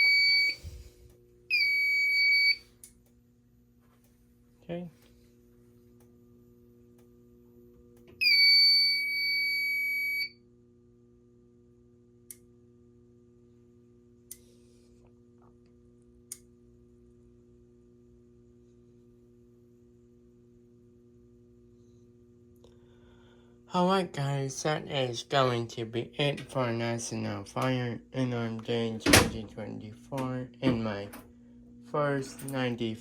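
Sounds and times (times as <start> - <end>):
fire alarm beep: 0.0 - 0.6, 1.5 - 2.7, 8.2 - 10.4
low electrical hum: 0.0 - 33.0.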